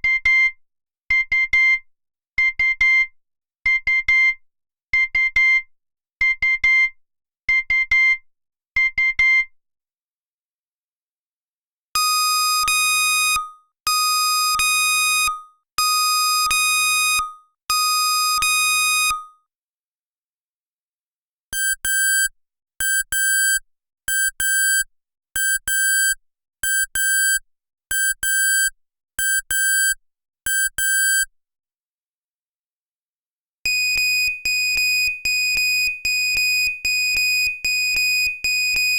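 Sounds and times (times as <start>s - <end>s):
digital alarm clocks beeping: 21.6s - 31.3s.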